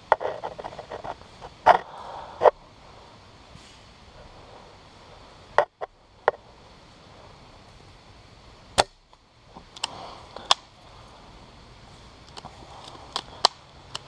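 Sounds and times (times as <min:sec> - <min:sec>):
sharp pops: 0:05.6 - 0:06.4, 0:08.7 - 0:10.8, 0:12.2 - 0:14.0.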